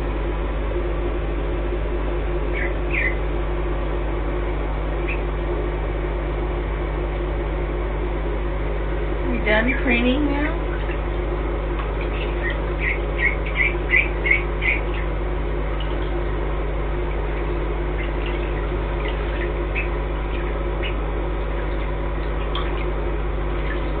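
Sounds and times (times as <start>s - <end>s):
steady hum: 0.0s - 24.0s
ducklings peeping: 2.4s - 3.3s, 4.9s - 5.4s, 9.3s - 24.0s.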